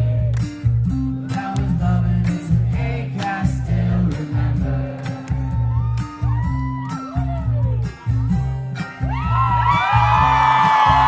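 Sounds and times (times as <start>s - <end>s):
strummed acoustic guitar: 0.0s - 6.3s
pulsing bass line: 0.0s - 11.0s
voices singing: 1.3s - 5.6s.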